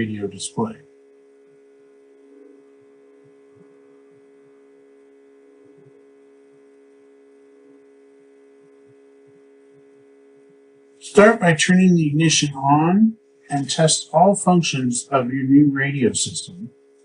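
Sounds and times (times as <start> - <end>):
faint electrical hum: 0.0 - 17.0
soft low pulses: 7.6 - 16.7.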